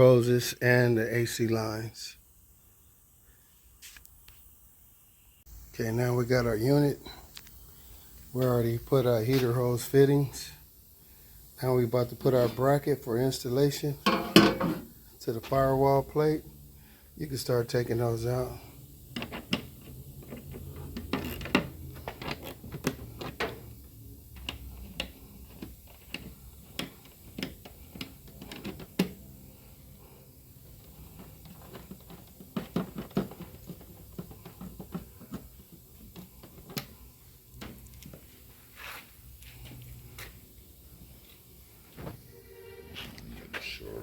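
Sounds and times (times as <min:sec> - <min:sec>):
low steady hum: 0:00.0 - 0:32.3, 0:39.4 - 0:44.0
hand tools clicking and clanking: 0:14.0 - 0:15.0.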